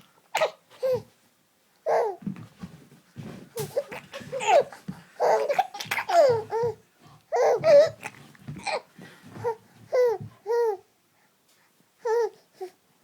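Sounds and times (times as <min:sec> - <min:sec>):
baby babbling: 0:00.4 - 0:01.1, 0:01.8 - 0:02.2, 0:03.6 - 0:10.9, 0:12.0 - 0:12.8
baby laughing: 0:03.6 - 0:06.8, 0:07.4 - 0:10.8.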